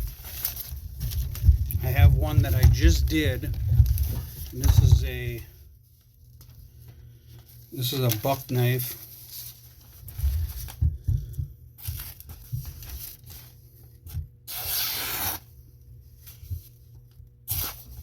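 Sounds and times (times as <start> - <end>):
rough tearing rasp: 14.5 - 15.5, 17.5 - 17.9.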